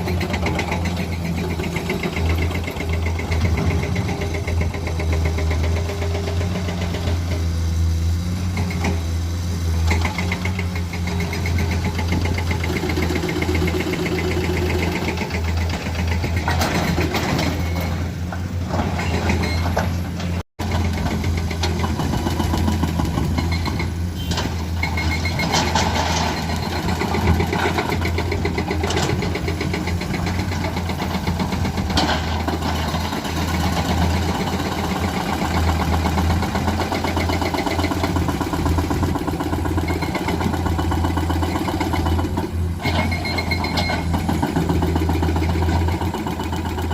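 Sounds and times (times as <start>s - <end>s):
heavy diesel engines droning: 0.0s - 46.9s
knocks and clanks: 15.5s - 33.0s.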